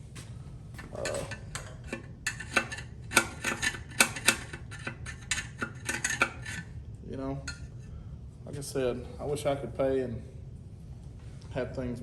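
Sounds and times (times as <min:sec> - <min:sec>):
metal tool scraping metal: 0:00.8 - 0:06.7.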